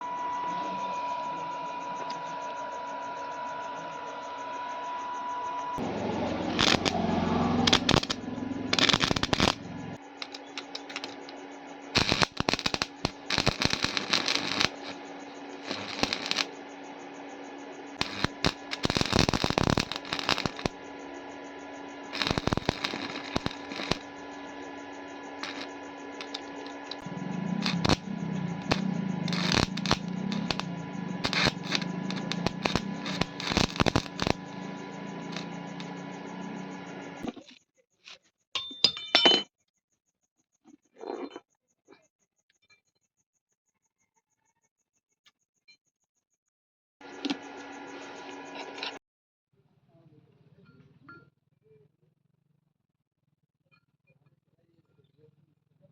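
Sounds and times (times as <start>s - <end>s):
steady hum: 0.0s - 37.3s
arc welding crackling and sputtering: 5.6s - 37.3s.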